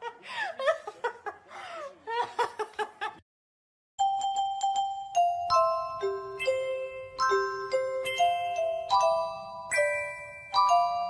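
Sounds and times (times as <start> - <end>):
glockenspiel chime tune: 4.0 - 11.0.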